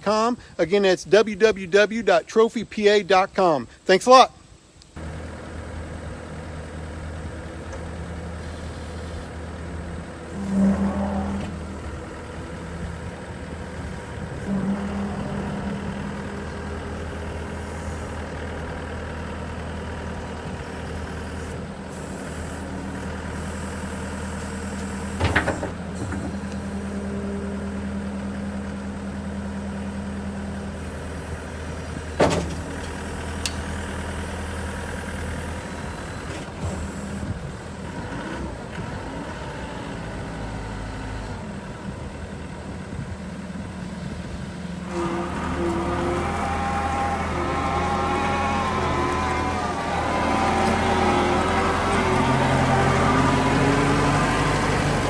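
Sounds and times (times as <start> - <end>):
diesel engine idling: 4.5 - 55.0.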